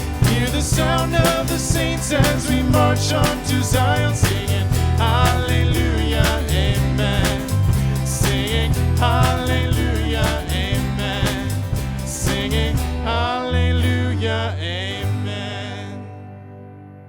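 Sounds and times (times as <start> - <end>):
steady drum beat: 0.0 - 13.1
band playing worship song: 0.0 - 15.8
voices singing: 0.0 - 16.1.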